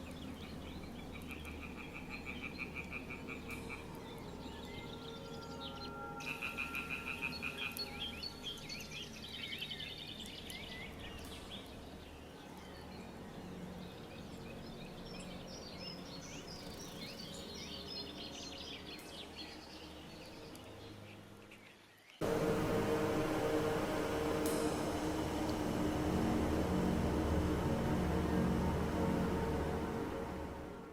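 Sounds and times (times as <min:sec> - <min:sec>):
frogs trilling: 0:00.5 - 0:05.0, 0:06.2 - 0:08.4.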